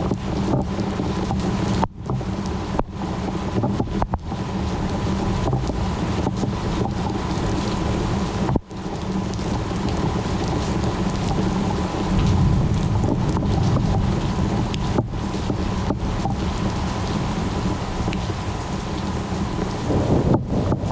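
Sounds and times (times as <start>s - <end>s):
rain hissing: 4.4s - 20.4s
low thunder rumble: 4.4s - 20.9s.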